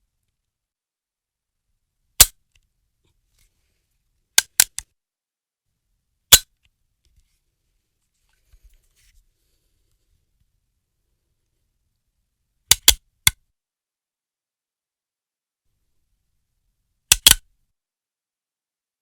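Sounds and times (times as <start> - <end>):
gun action clacking: 17.1 - 17.4.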